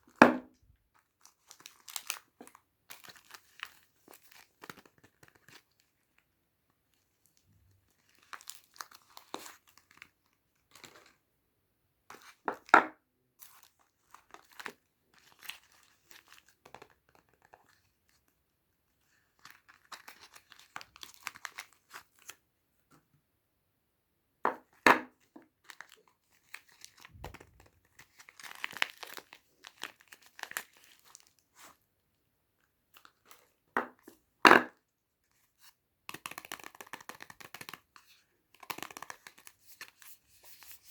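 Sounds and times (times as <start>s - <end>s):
wrappers crinkling and tearing: 27.9s - 31.7s.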